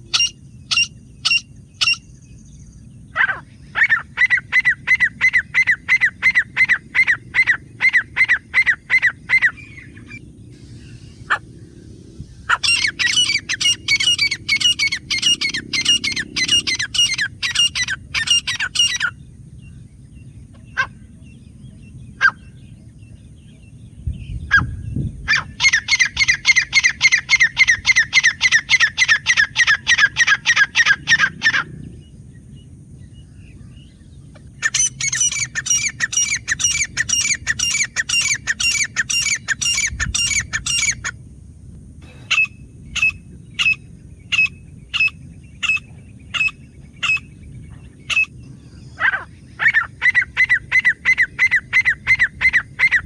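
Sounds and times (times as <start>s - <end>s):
bird calling repeated sharp notes: 0.1s - 2.1s.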